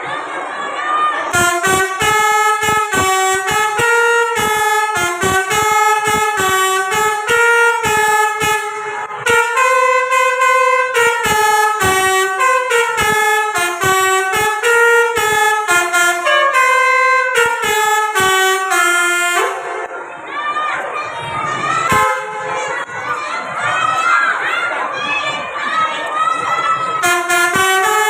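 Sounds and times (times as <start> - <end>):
air horn playing fast melody: 1.3 - 20.0, 21.8 - 22.9, 27.0 - 28.0.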